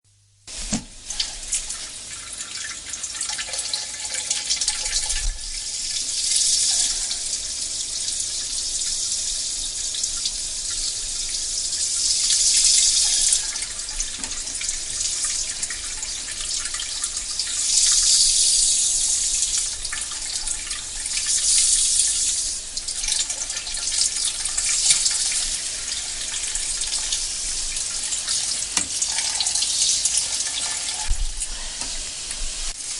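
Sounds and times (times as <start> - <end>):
person urinating: 2.6 - 7.4.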